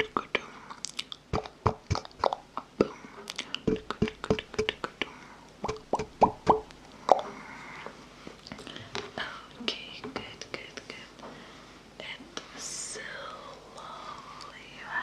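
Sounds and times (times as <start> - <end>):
wet mouth clicks and pops: 0.0 - 7.3.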